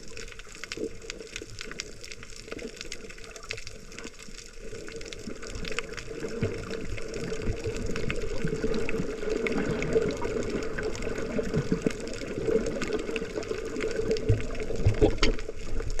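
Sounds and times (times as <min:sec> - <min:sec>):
water churning underwater: 0:00.0 - 0:16.0
small clicks and knocks: 0:14.3 - 0:15.7.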